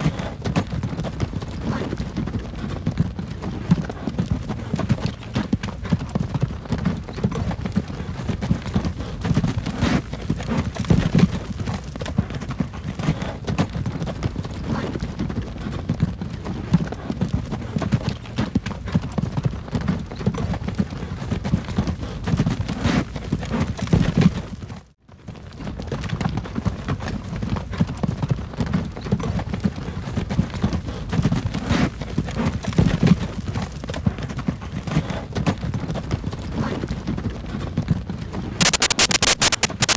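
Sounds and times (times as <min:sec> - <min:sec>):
wagon wheels rumbling and rattling: 0:00.0 - 0:38.6
hooves clip-clopping: 0:00.0 - 0:38.8.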